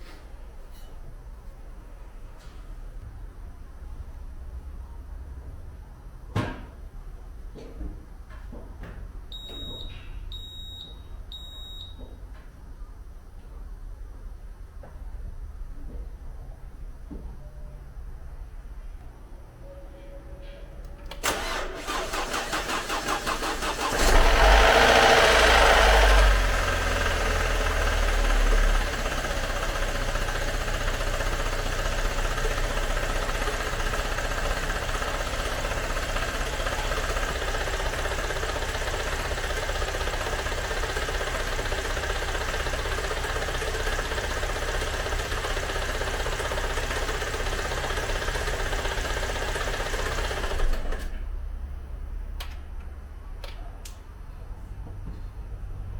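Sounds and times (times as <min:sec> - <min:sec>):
starter motor cranking: 0:21.1 - 0:51.2
car engine revving and idling: 0:22.9 - 0:49.4.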